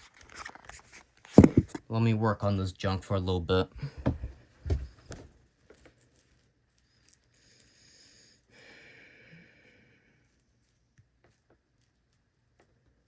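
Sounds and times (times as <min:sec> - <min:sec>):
handling knocks: 0:01.4 - 0:01.8.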